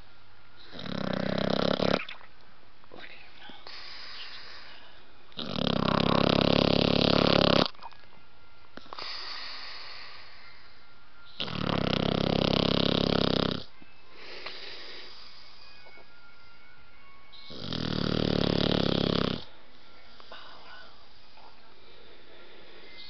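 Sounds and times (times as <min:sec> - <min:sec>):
puppy snoring: 0:00.6 - 0:02.3, 0:05.3 - 0:07.9, 0:08.8 - 0:10.4, 0:11.3 - 0:13.7, 0:17.4 - 0:19.6
soft breaths: 0:02.9 - 0:05.3, 0:08.8 - 0:11.1, 0:13.6 - 0:17.2, 0:18.4 - 0:23.0.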